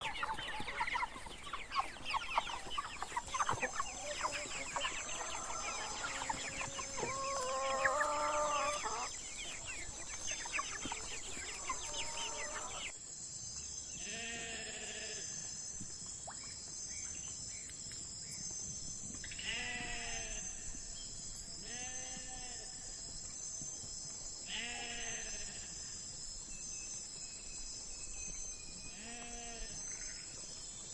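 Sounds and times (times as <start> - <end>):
chickens clucking: 0.0 - 13.0
animal bleating: 14.0 - 15.2, 19.4 - 20.6, 21.6 - 22.7, 24.5 - 25.8, 28.9 - 29.8.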